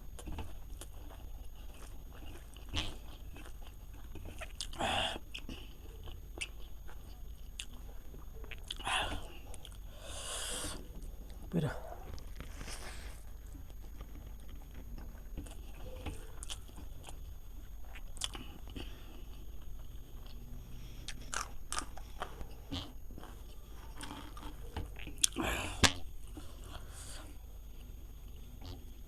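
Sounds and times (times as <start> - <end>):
person chewing meat: 0.0 - 28.9
small crunches and clicks: 21.0 - 26.0.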